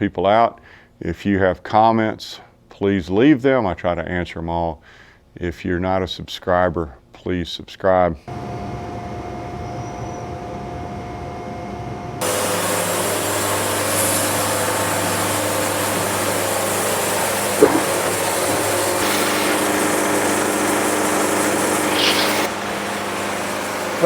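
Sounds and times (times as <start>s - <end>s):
band sawmill sawing: 12.2s - 24.0s
steady hum: 15.4s - 24.0s
sharp knock: 17.6s - 18.8s.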